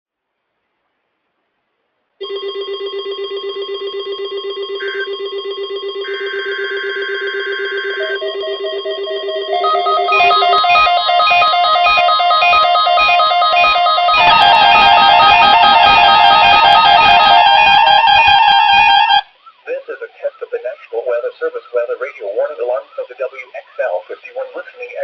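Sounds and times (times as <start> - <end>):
pulsing electronic alarm beep: 2.2 - 21.2
steady high tone: 2.2 - 25.0.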